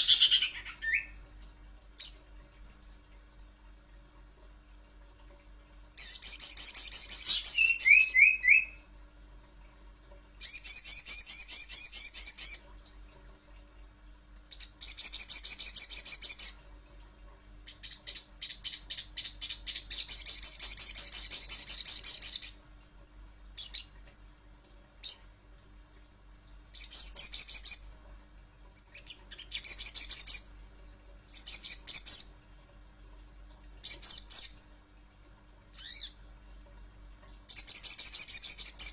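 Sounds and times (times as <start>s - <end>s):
bird song with fast trills: 0.0s - 1.2s, 6.0s - 8.8s, 10.4s - 12.6s.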